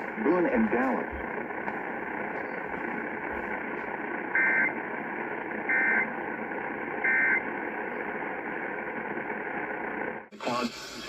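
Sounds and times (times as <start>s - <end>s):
radio static: 0.0s - 11.0s.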